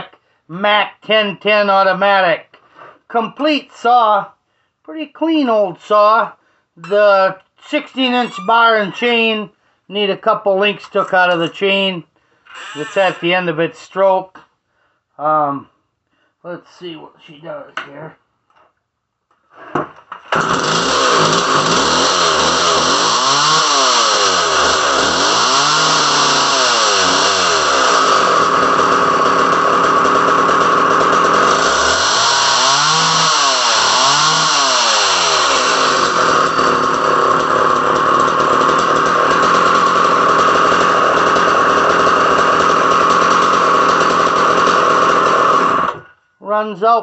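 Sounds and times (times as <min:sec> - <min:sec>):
chainsaw engine running: 0:06.8 - 0:09.3, 0:10.8 - 0:11.8, 0:12.6 - 0:13.4, 0:20.3 - 0:46.1.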